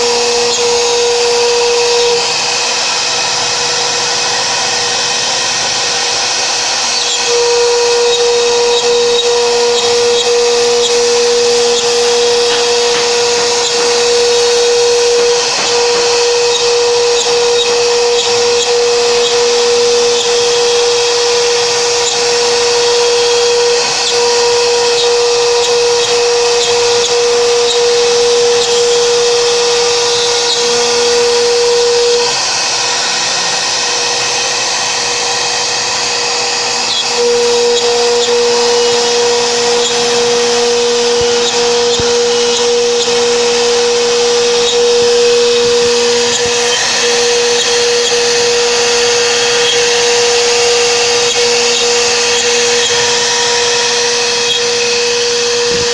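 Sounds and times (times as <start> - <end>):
router spindle whine: 0.0 - 55.9
cutting hiss: 3.3 - 34.1.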